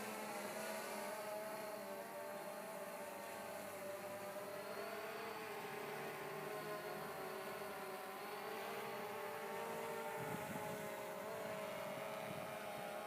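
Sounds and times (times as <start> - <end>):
drone motors buzzing: 0.0 - 13.0
wind hiss: 0.0 - 13.0.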